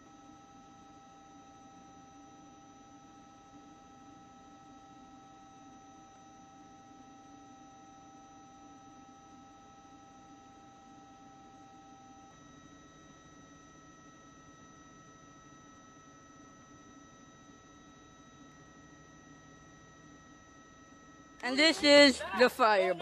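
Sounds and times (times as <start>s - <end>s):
faint steady hum: 15.2s - 23.0s.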